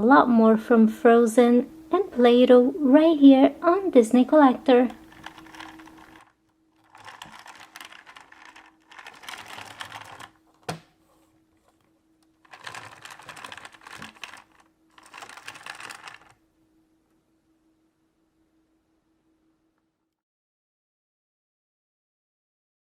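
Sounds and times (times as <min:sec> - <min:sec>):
faint steady hum: 0:00.0 - 0:20.2
rapid dense clicking bursts: 0:05.1 - 0:10.3, 0:12.5 - 0:16.4.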